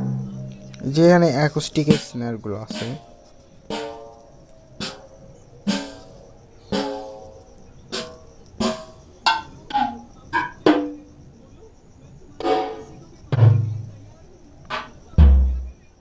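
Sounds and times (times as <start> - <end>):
electronic drum pad hits: 0.0 - 0.7, 1.9 - 2.1, 2.7 - 4.2, 4.8 - 10.1, 12.4 - 14.0, 15.2 - 15.8.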